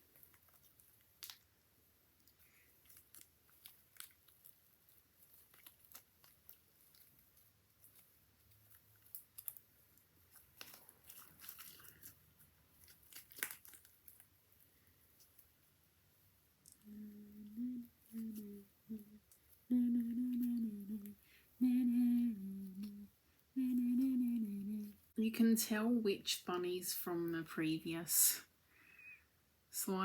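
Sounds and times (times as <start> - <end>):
slime clicking and crackling: 0.0 - 15.6
slime popping: 12.8 - 14.3.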